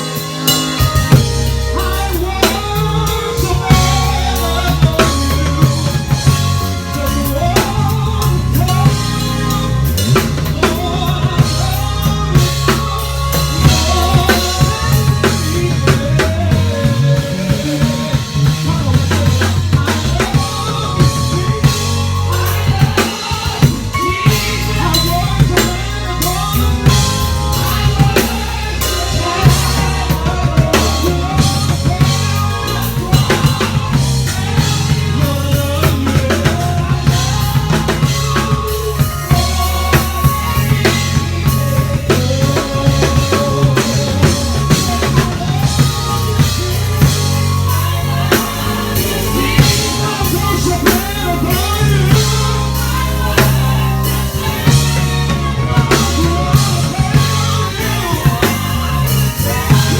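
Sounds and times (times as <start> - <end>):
bass guitar: 0.0 - 59.9
drum kit: 0.0 - 59.9
gospel band playing: 0.0 - 59.9
keyboards melody: 0.0 - 59.9.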